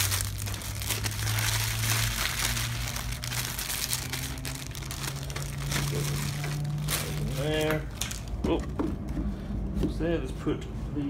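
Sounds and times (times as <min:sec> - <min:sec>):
paper rustling and crinkling: 0:00.0 - 0:08.4.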